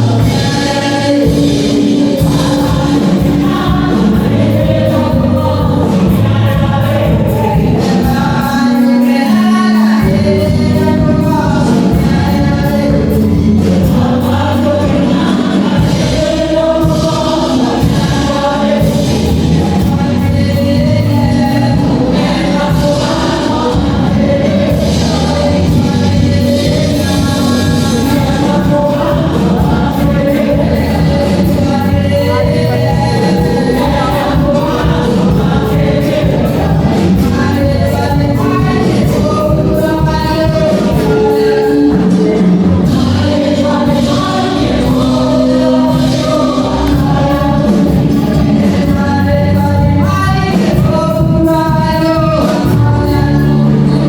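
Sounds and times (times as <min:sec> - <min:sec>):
gospel choir with instrumental backing: 0:00.0 - 0:54.0.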